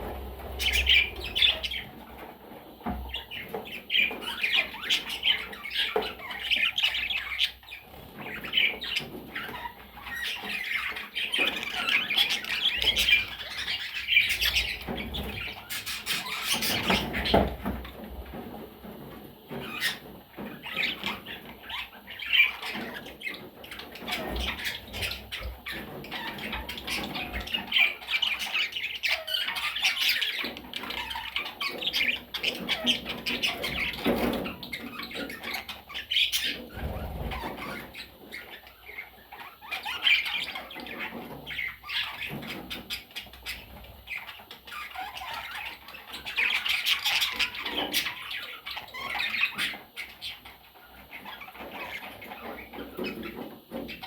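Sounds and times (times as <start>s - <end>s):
budgerigars chattering and squawking: 0.0s - 54.0s.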